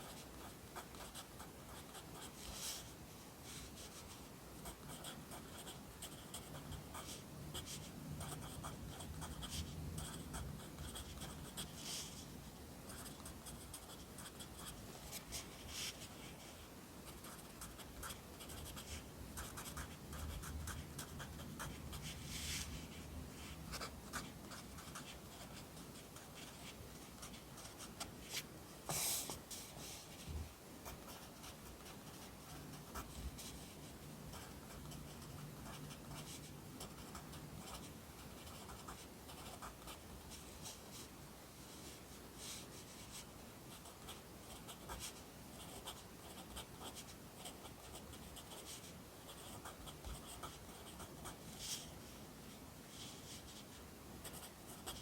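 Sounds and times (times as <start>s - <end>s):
pencil scratching on paper: 3.7s - 12.2s, 17.1s - 30.3s.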